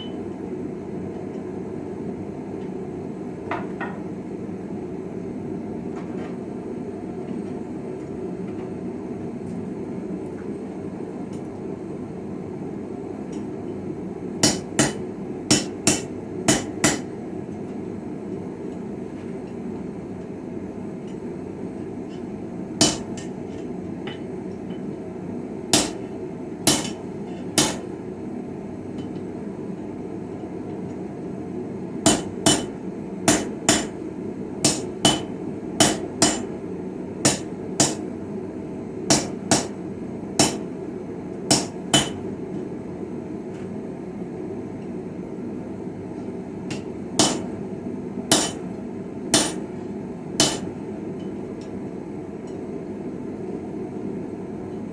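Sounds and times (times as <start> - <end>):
hammer striking steel on anvil: 14.4 - 17.1, 22.8 - 23.4, 25.8 - 26.1, 26.7 - 27.9, 32.1 - 34.0, 34.6 - 36.6, 37.2 - 38.1, 39.1 - 39.8, 40.4 - 40.7, 41.5 - 42.2, 46.7 - 47.6, 48.3 - 48.7, 49.4 - 49.7, 50.4 - 51.3.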